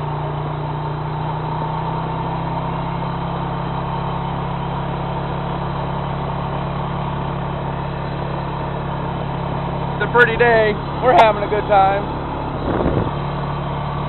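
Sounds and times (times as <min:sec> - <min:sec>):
atv engine running steadily: 0:00.0 - 0:14.0.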